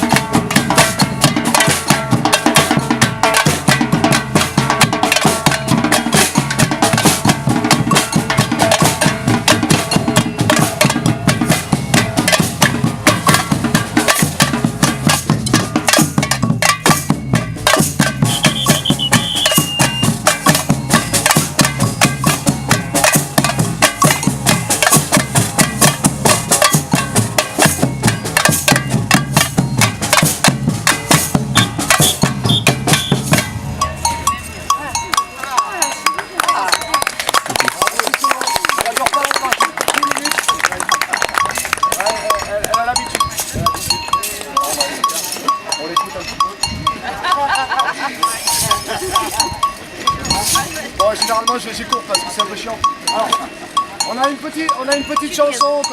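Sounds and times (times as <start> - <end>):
cowbell strikes: 0.0 - 55.9
percussion band drumming: 0.0 - 55.9
wood block strikes: 0.0 - 55.9.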